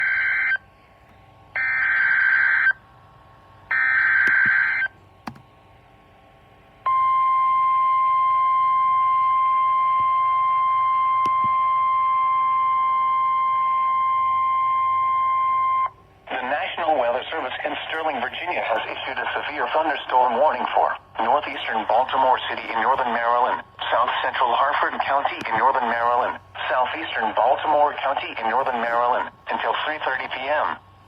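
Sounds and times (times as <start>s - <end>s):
steady warning alarm tone: 0.0s - 0.6s, 1.5s - 2.8s, 3.7s - 5.0s, 6.8s - 31.0s.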